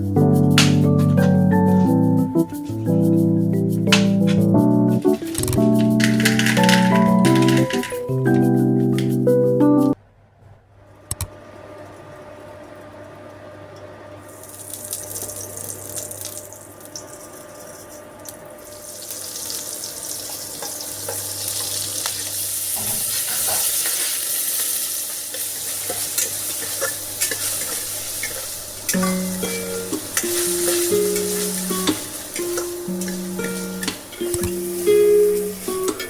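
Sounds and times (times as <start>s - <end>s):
stirring clicks: 2.4s - 9.1s, 25.3s - 36.0s
sharp click: 11.1s - 11.3s
food sizzling in oil: 14.3s - 18.0s, 18.6s - 36.0s.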